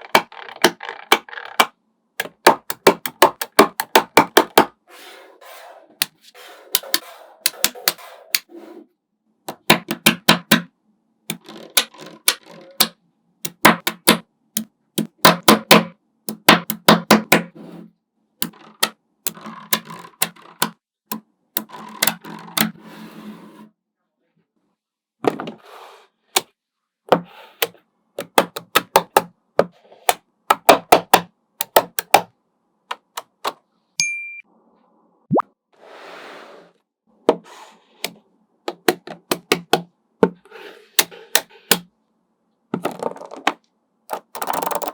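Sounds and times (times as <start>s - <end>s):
magnetic balls clicking: 0.0s - 4.6s, 11.3s - 17.4s, 18.4s - 22.7s, 30.5s - 32.3s, 44.1s - 44.9s.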